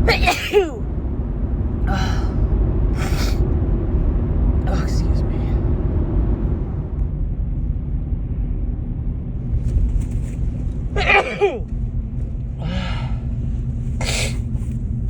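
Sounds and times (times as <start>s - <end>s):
woman sneezing: 0.0s - 0.8s, 11.0s - 11.6s, 14.0s - 14.4s
steady low rumble: 0.0s - 15.0s.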